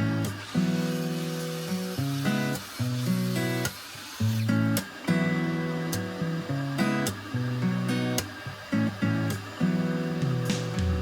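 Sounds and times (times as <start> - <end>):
instrumental background music: 9.8 - 11.0.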